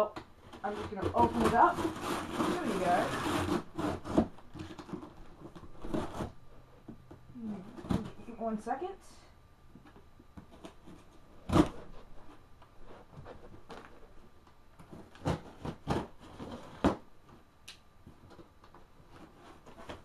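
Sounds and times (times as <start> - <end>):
cardboard box knocks and scrapes: 0.6 - 6.3.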